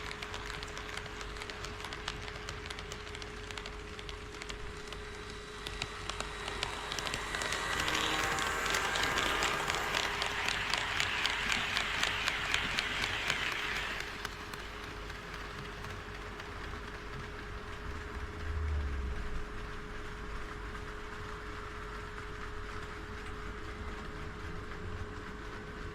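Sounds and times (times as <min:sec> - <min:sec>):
model train wheels clicking: 0:00.0 - 0:18.4
low rumble: 0:04.6 - 0:14.2, 0:17.6 - 0:20.8.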